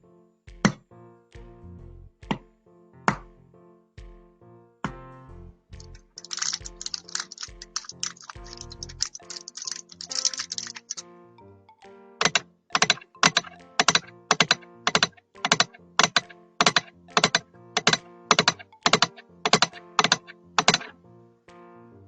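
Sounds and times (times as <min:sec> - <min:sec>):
sharp rhythmic clicking taps: 0:05.8 - 0:11.0, 0:12.2 - 0:20.9.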